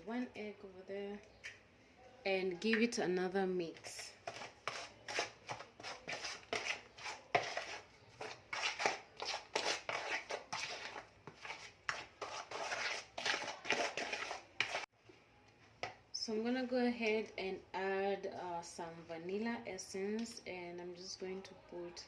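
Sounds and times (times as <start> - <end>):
spoon mixing batter in bowl: 3.6 - 15.2.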